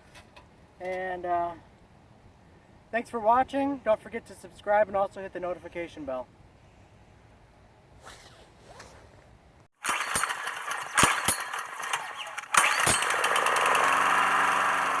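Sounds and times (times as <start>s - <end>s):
small gas engine running roughly: 9.8s - 15.0s.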